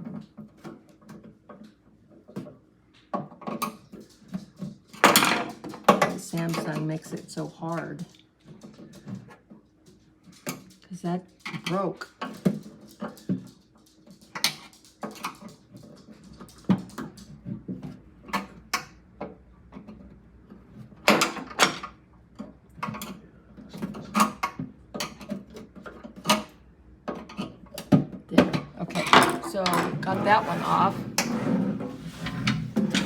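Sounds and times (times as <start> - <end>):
plastic drawer clicking and scraping: 28.4 - 33.0.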